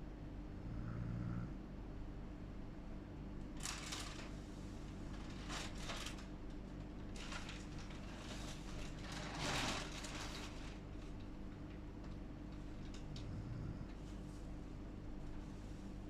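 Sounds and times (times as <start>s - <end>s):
steady low hum: 0.0s - 16.0s
person snoring and breathing: 0.6s - 1.6s, 13.2s - 14.0s.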